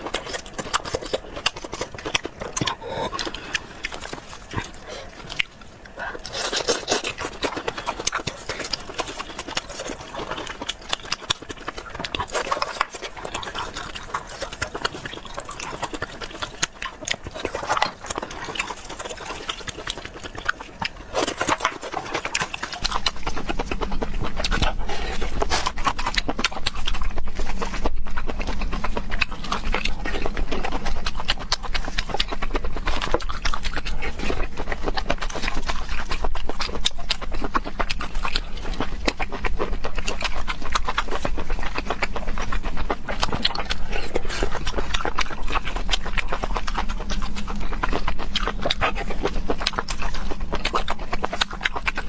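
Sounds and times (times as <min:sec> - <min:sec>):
low steady rumble: 0:00.0 - 0:52.0
wet smacking and chewing: 0:00.0 - 0:52.0.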